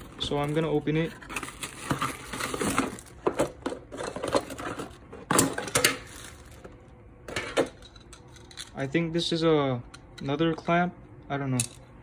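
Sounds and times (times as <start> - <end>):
hard plastic parts clattering: 0.0 - 8.8.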